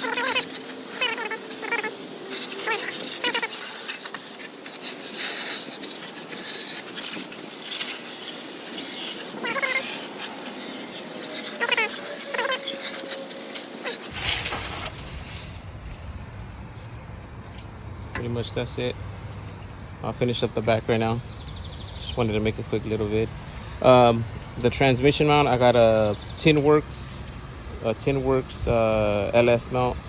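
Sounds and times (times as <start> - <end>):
high squeaky chirps: 0.0 - 14.5
pressure washer spraying metal: 0.0 - 17.5
low rumble: 14.2 - 24.6.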